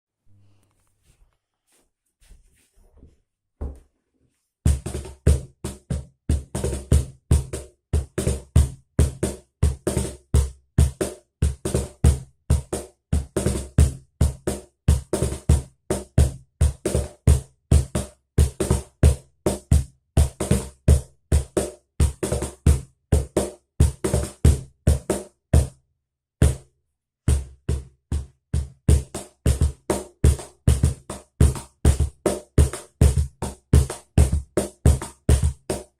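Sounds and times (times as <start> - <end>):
cajon played by hand: 28.9 - 35.9.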